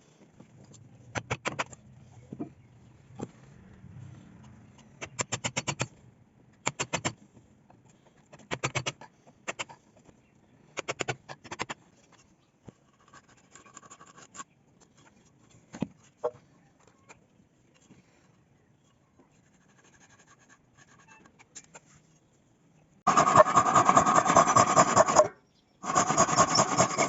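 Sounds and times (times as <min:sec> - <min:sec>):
hand tool strokes on wood: 0:23.1 - 0:27.0.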